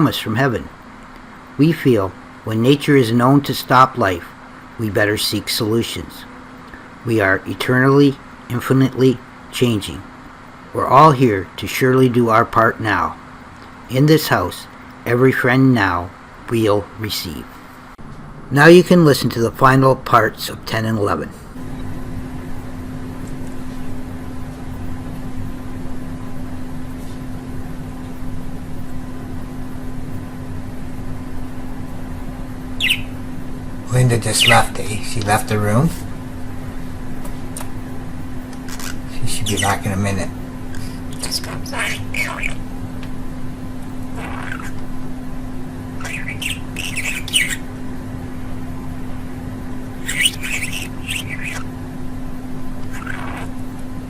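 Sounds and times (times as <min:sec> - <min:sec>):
mechanical hum with hiss: 0:00.0 - 0:54.0
budgerigar chirping: 0:32.8 - 0:33.3, 0:38.7 - 0:39.8, 0:40.7 - 0:42.7, 0:44.2 - 0:44.8, 0:46.0 - 0:47.7, 0:50.0 - 0:51.7, 0:52.8 - 0:53.6.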